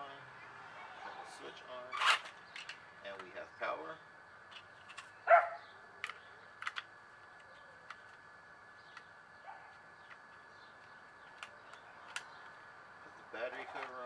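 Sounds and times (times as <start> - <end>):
dog bark: 5.3 - 5.6, 9.4 - 9.8
plastic parts clicking and tapping: 6.0 - 8.2, 10.0 - 12.3.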